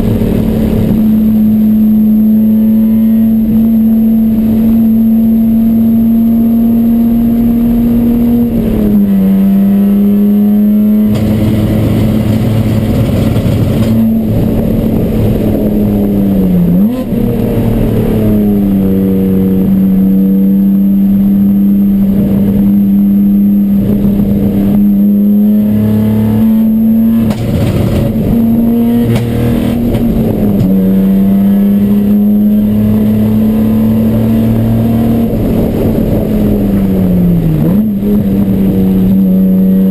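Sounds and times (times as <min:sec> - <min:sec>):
race car engine misfiring: 0:11.1 - 0:14.0.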